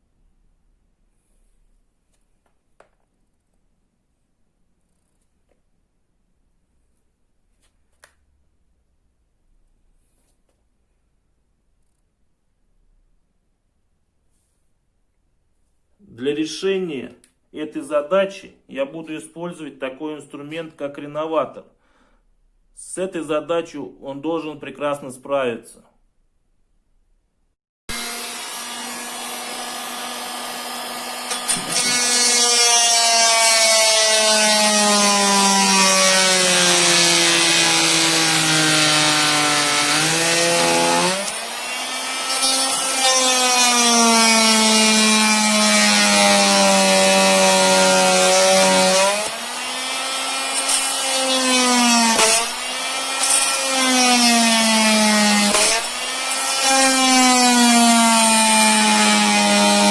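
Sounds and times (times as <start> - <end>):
multi-tool cutting flooring: 27.9 - 59.9.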